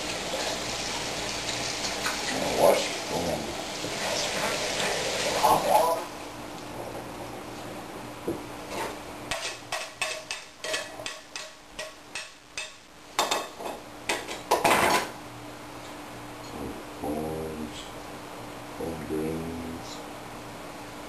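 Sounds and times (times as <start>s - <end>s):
utensils and dishes clinking: 9.3s - 15.1s.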